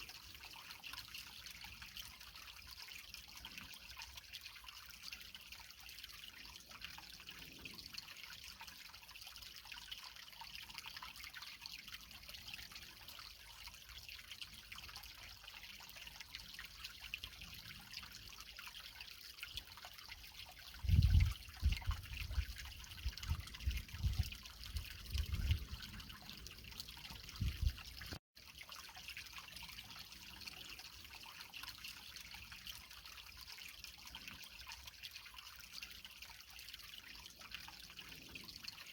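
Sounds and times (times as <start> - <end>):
creek water trickling over rocks: 0.0 - 38.9.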